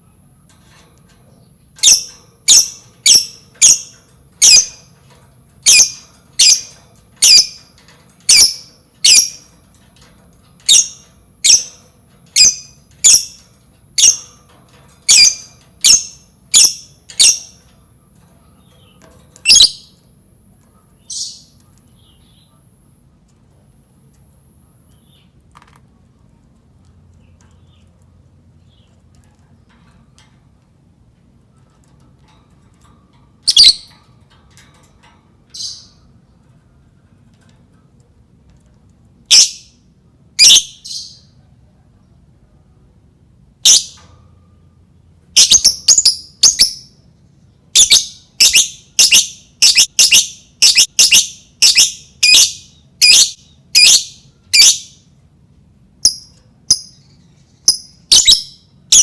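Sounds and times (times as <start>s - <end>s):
lovebird shrill calls: 1.8s - 4.8s, 5.6s - 7.6s, 15.1s - 17.5s, 19.4s - 19.9s, 33.5s - 33.9s, 47.8s - 54.9s, 57.7s - 59.0s.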